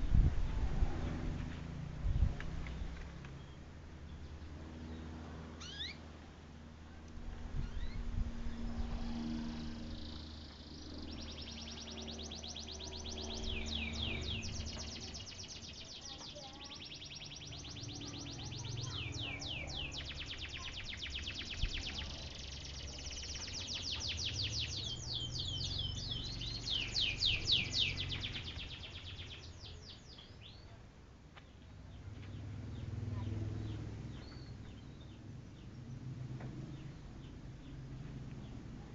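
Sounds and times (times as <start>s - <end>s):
canary singing trills: 5.6s - 6.0s, 7.6s - 8.1s, 9.1s - 30.8s, 31.9s - 36.1s.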